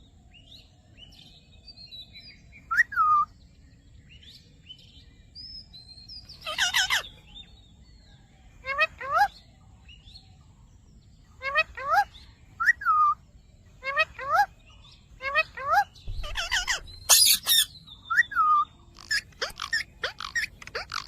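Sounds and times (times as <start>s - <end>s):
parrot calling: 6.3s - 7.2s, 8.6s - 9.4s, 11.4s - 13.2s, 13.8s - 21.0s
parrot squawks: 6.4s - 7.1s, 11.4s - 13.2s, 13.8s - 14.5s, 15.2s - 21.0s.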